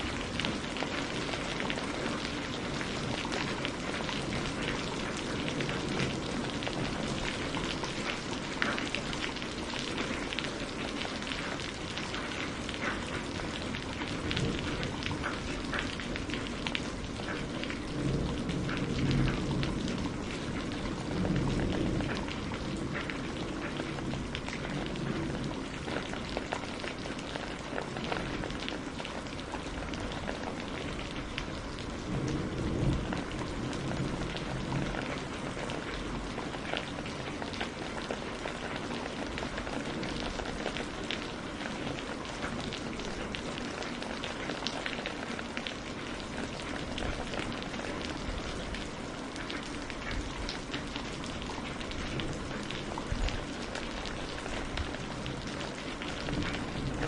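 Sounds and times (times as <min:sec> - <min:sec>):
heavy rain pattering: 0:00.0 - 0:57.0
distant thunder rumbling: 0:13.5 - 0:44.6, 0:50.1 - 0:57.0.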